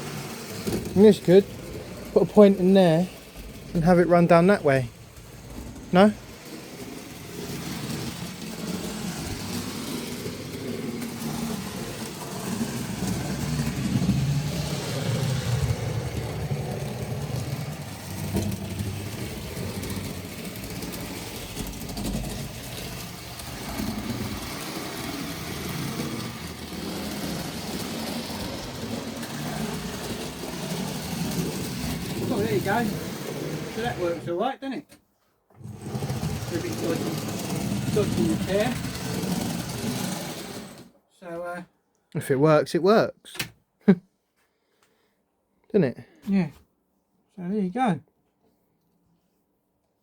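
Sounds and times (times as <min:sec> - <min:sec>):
model train motor humming: 0:00.0 - 0:34.2, 0:35.6 - 0:40.9
wheels rumbling on track: 0:00.0 - 0:34.2, 0:35.6 - 0:40.8.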